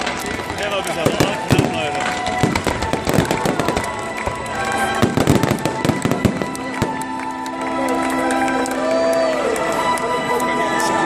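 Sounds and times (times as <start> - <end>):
fireworks bangs and crackles: 0.0 - 8.6
music: 0.0 - 11.0.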